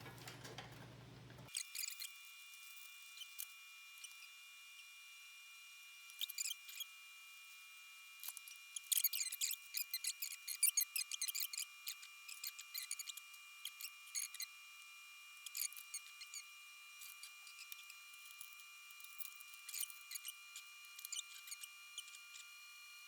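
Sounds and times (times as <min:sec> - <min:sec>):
cables and plastic clicking and rustling: 0:00.0 - 0:02.0.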